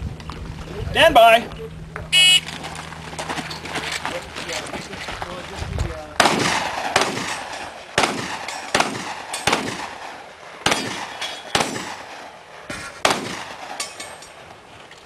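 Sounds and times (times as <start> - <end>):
gunshots with ringing echo: 6.2 - 14.1.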